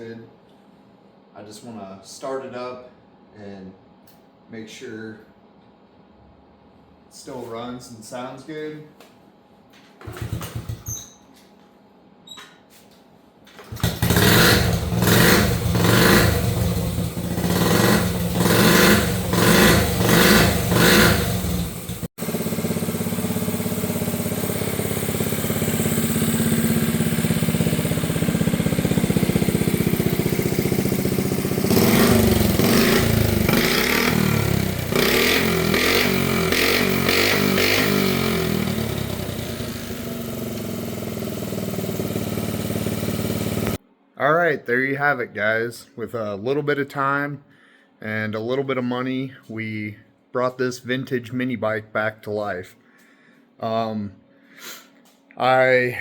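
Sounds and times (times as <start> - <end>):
small motorcycle engine revving: 10.0 - 10.9, 13.7 - 43.8
engine idling: 13.7 - 35.0, 35.7 - 43.8.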